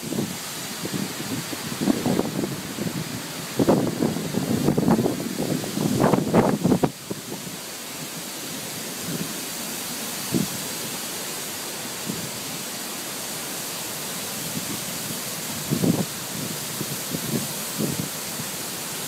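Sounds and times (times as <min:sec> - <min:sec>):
steady rushing noise: 0:00.0 - 0:19.0.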